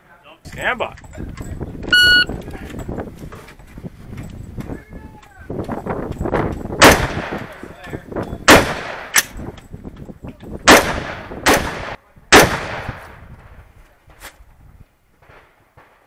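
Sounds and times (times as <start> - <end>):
rifle shots echoing: 6.8 - 7.6, 8.5 - 9.4, 10.6 - 13.1.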